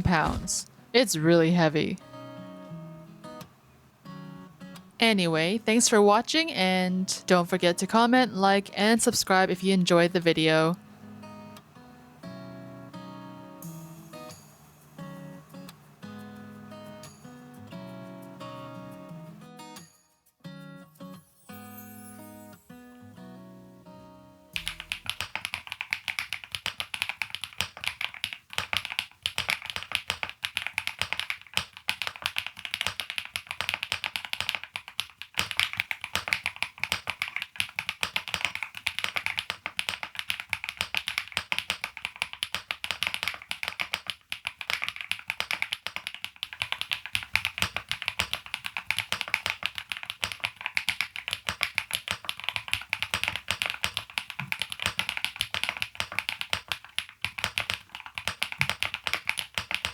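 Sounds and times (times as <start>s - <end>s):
mechanical keyboard keystroke clacks: 24.6s - 59.9s.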